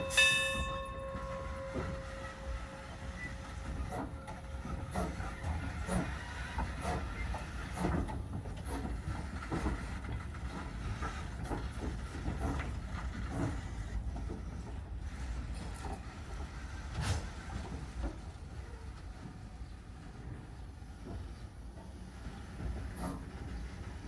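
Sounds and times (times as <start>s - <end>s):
low train rumble: 0.0s - 24.0s
train wheels clacking over rail joints: 0.0s - 24.0s.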